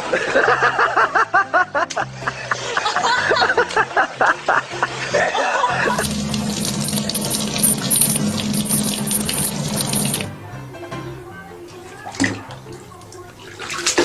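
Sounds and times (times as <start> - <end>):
water running from a tap: 5.9 - 10.3.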